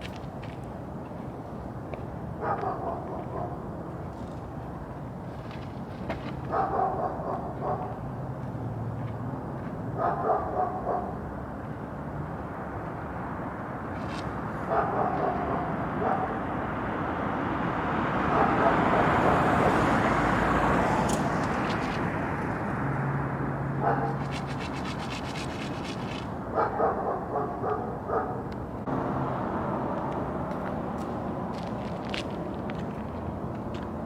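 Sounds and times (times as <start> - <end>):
dog barking: 2.4 - 3.6, 6.5 - 8.0, 10.0 - 11.2, 14.7 - 16.4, 18.2 - 19.5, 23.8 - 24.2, 26.5 - 28.5.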